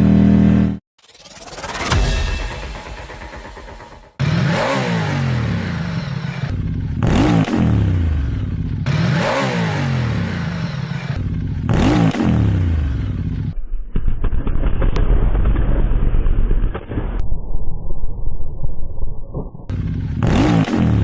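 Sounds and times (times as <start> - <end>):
motorcycle engine revving: 0.0 - 0.8, 1.4 - 13.6, 19.7 - 21.0.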